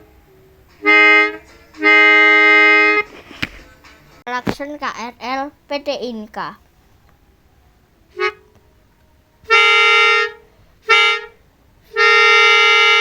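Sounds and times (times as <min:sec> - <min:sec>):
electric train horn: 0:00.8 - 0:03.1, 0:09.4 - 0:13.0.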